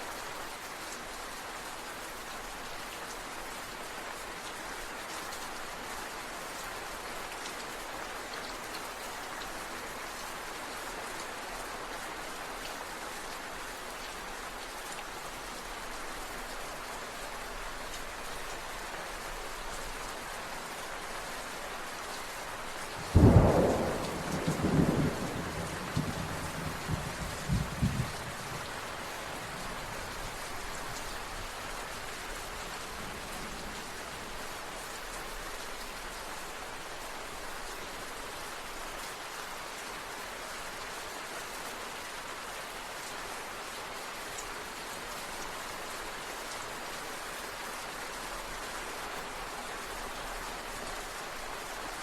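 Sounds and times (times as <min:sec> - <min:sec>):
steady rain: 0:00.0 - 0:52.0
thunder crack and rumble: 0:23.0 - 0:30.2.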